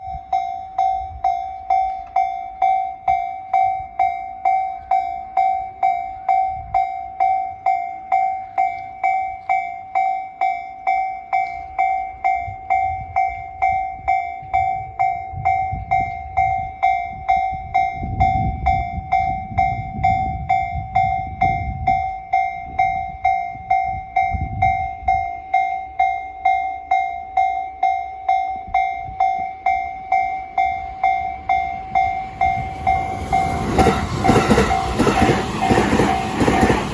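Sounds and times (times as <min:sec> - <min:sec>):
electronic crossing bell dinging: 0:00.0 - 0:36.9
train rumbling past: 0:29.6 - 0:36.9.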